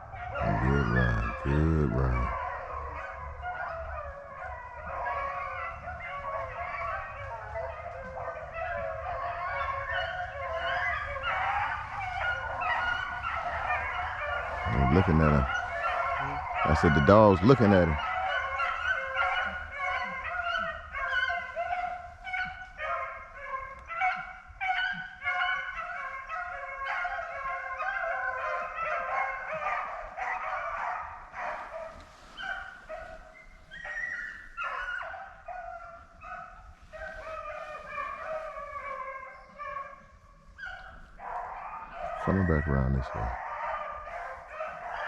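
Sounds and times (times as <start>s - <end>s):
hounds baying: 0.0s - 45.0s.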